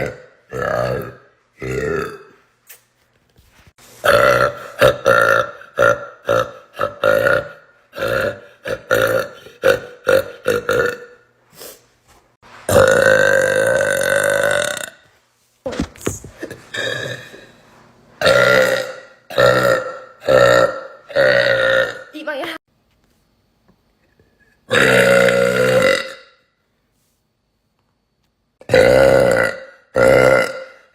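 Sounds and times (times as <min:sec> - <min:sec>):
woman burping loudly: 0:00.0 - 0:02.4, 0:04.0 - 0:11.2, 0:12.7 - 0:15.1, 0:16.4 - 0:17.5, 0:18.2 - 0:22.2, 0:24.7 - 0:26.4, 0:28.6 - 0:30.9.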